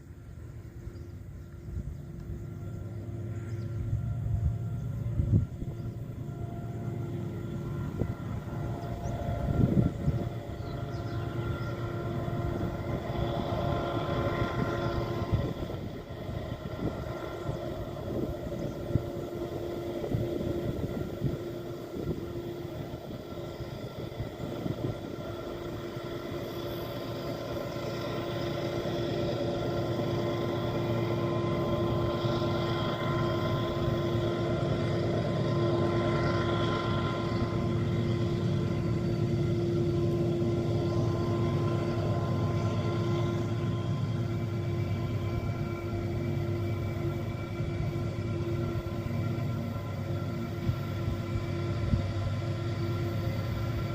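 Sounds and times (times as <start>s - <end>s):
locomotive engines at full throttle: 0.0s - 53.9s.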